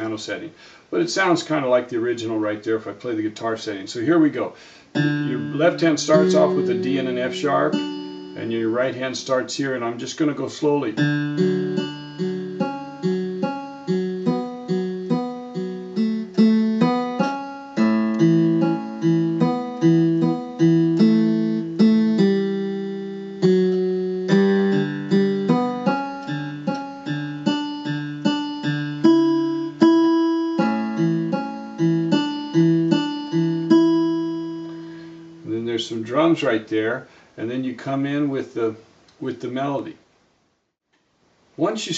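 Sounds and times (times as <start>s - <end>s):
repeating bass pattern: 5.0s - 8.4s
keyboard guitar arpeggio: 5.0s - 8.9s, 10.9s - 35.5s.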